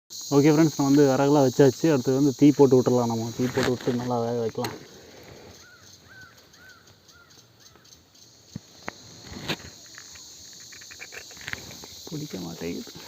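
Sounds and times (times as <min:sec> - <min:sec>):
insect buzzing: 0:00.1 - 0:13.0
bird calling: 0:03.1 - 0:12.4.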